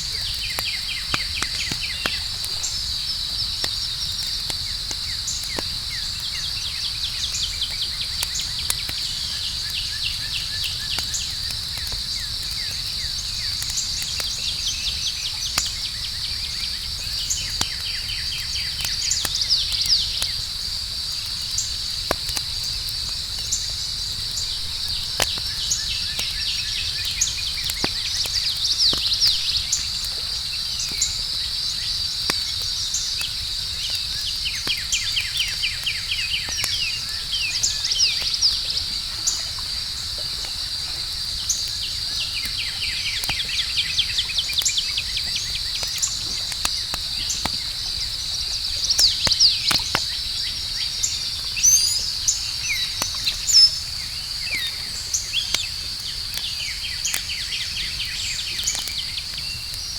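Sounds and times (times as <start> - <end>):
campfire crackling and popping: 0.0 - 59.9
crickets chirping: 0.0 - 59.9.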